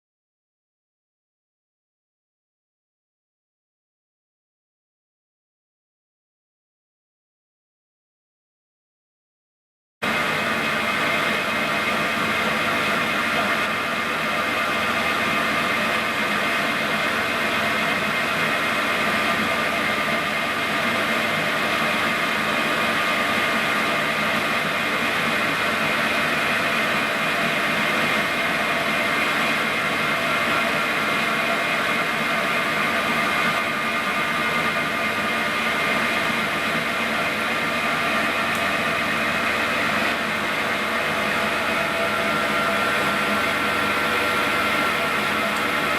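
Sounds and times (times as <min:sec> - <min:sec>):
lathe running with whine: 0:10.0 - 0:45.9.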